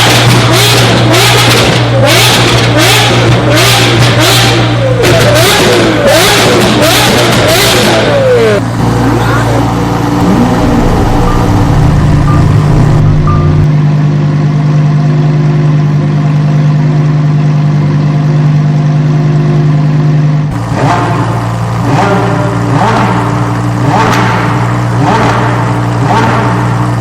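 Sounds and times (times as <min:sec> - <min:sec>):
engine revving: 0:00.0 - 0:13.7, 0:20.5 - 0:27.0
car engine droning: 0:00.0 - 0:27.0.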